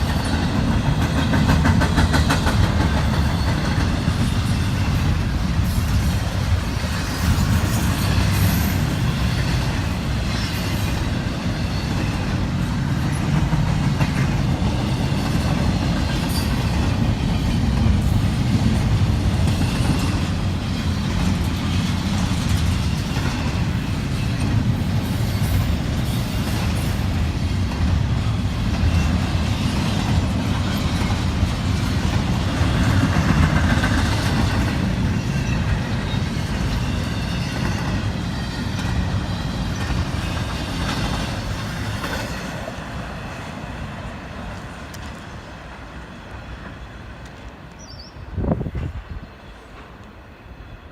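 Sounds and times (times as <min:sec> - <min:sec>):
train wheel clicks: 0:00.0 - 0:09.9, 0:10.6 - 0:38.0
freight train rumble: 0:00.0 - 0:50.9.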